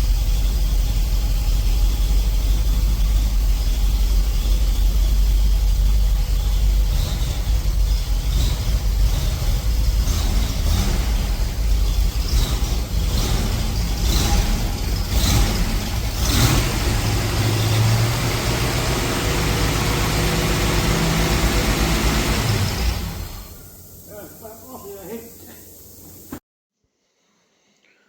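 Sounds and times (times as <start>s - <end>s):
engine-driven blower rushing air: 6.9s - 26.4s.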